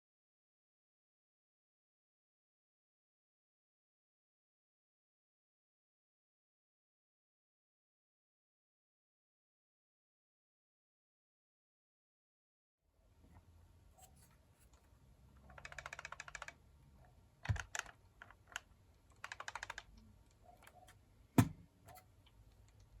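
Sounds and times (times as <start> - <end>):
knocks of handling plastic light: 21.4 - 21.6.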